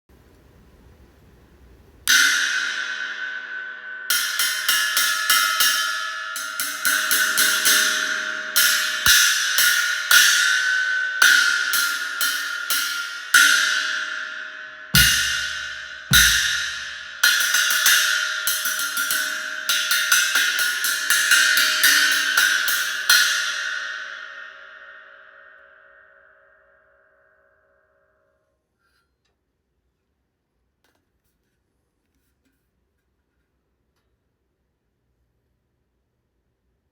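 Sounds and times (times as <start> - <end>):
china cymbal hits ringing: 2.1 - 26.1
heavy low thump: 15.0 - 16.8.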